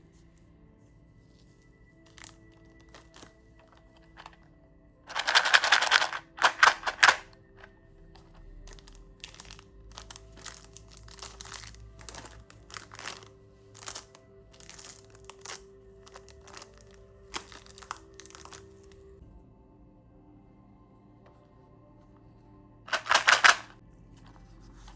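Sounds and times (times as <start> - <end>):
faint background music: 0.0 - 24.9
plastic wrapper crinkling: 2.1 - 4.4, 5.1 - 7.2, 8.2 - 19.0, 22.9 - 23.7.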